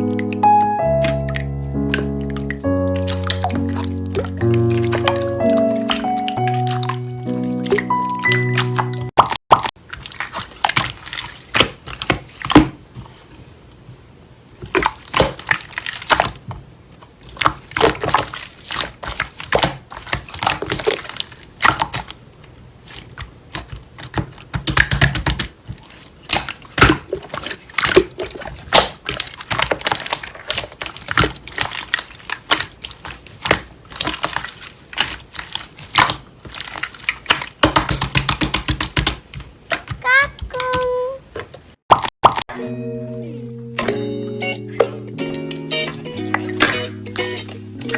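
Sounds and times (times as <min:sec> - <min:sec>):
slime squishing by hand: 0:00.0 - 0:13.6, 0:14.6 - 0:41.2
wet clicks and pops: 0:00.1 - 0:07.0, 0:23.2 - 0:25.5, 0:35.0 - 0:40.0, 0:44.8 - 0:47.9.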